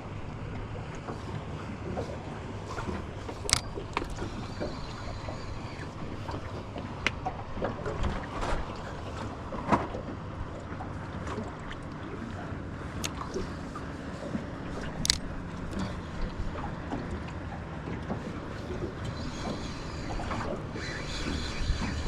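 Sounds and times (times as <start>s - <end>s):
water slapping against boat hull: 0.0s - 22.0s
sharp knocks from boat: 0.5s - 22.0s
wind on microphone: 18.8s - 22.0s.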